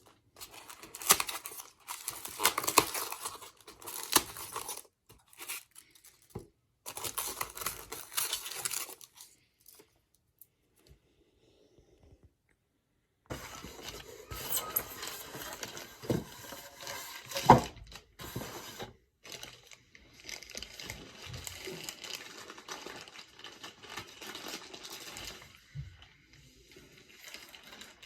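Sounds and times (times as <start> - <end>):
plastic and cardboard rustling: 0.0 - 10.0, 13.3 - 28.0.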